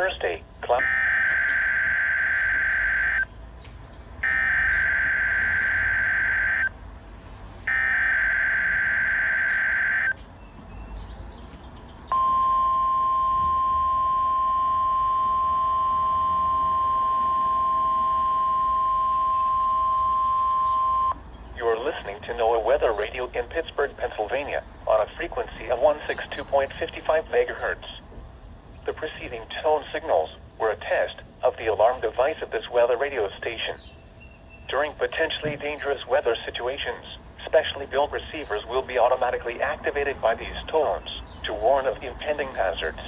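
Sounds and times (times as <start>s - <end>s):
steady alarm tone: 0.6s - 3.3s, 4.2s - 6.8s, 7.7s - 10.2s, 12.1s - 21.2s
raspy digital data buzz: 0.8s - 3.3s, 4.2s - 6.7s, 7.7s - 10.2s.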